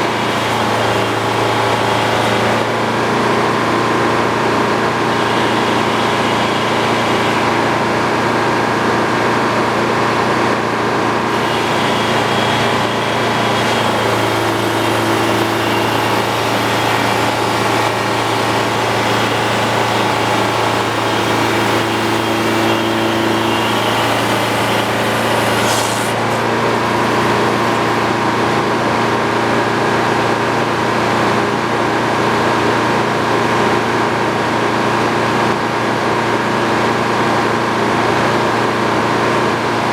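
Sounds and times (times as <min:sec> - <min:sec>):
saw cutting wooden beam: 0:00.0 - 0:30.7
sawmill machine droning: 0:00.0 - 0:39.9.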